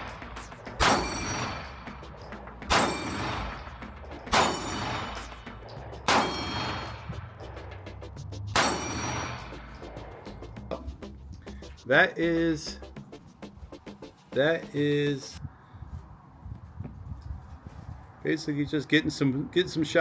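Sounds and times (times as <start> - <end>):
pistol shots: 0.0 - 7.7, 8.5 - 10.2.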